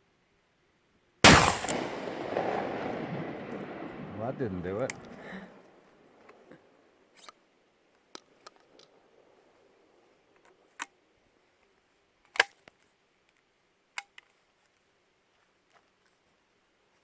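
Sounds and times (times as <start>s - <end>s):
shotgun metallic clicks and clacks: 1.3s - 5.2s.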